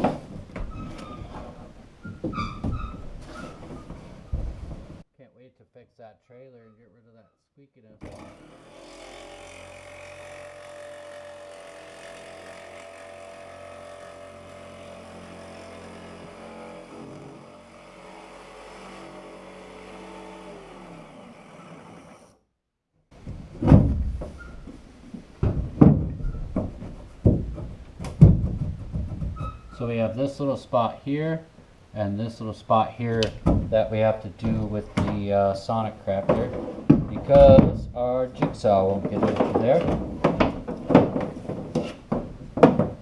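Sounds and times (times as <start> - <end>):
electric jigsaw cutting wood: 8.0 - 22.4
loud knocks: 23.2 - 24.4, 25.4 - 29.7, 33.3 - 33.8, 36.2 - 43.0.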